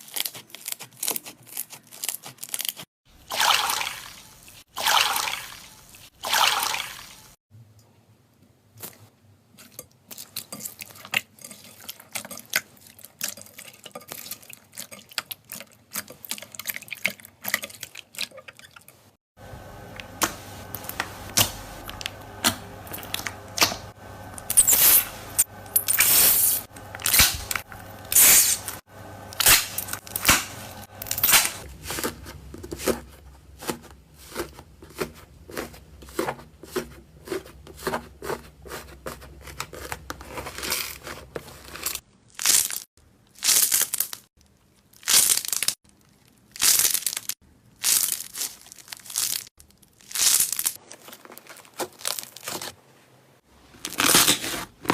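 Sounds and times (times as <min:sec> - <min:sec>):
low steady hum: 0:19.4 - 0:37.2.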